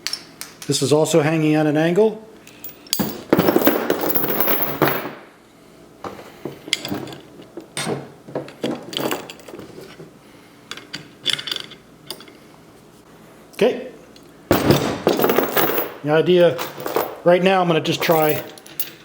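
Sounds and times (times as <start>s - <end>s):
chain rattling: 2.6s - 5.1s, 8.7s - 9.7s, 14.5s - 17.2s, 17.9s - 19.0s
metal clinks and knocks: 2.6s - 5.2s, 6.5s - 10.0s, 14.5s - 17.3s, 17.9s - 19.0s.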